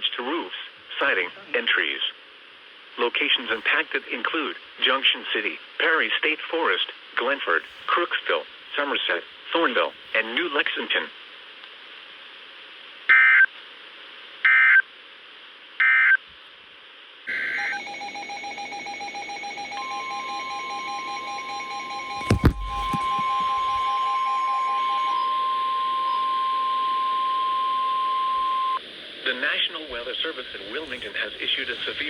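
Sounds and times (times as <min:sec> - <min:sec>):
receiver pulsing alert beeps: 0:17.3 - 0:28.8
steady single-pitch attention tone: 0:17.3 - 0:28.8
brief thump: 0:22.2 - 0:23.7.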